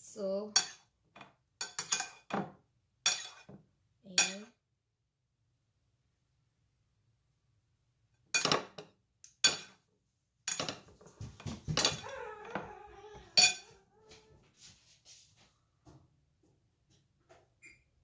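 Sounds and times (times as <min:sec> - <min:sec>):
dishes and utensils clattering: 0:00.6 - 0:03.6, 0:08.3 - 0:09.8, 0:10.5 - 0:13.8.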